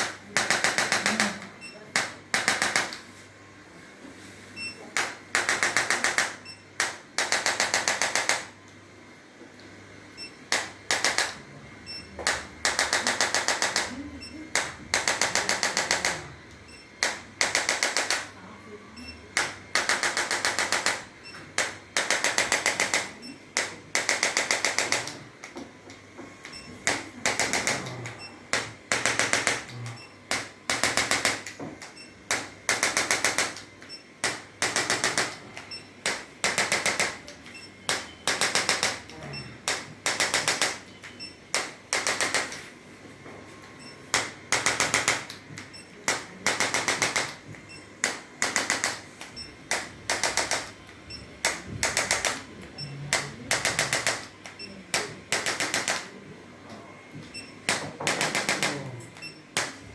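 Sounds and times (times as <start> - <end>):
rapid clicking taps: 17.0 - 18.3, 44.2 - 52.4, 53.1 - 56.0.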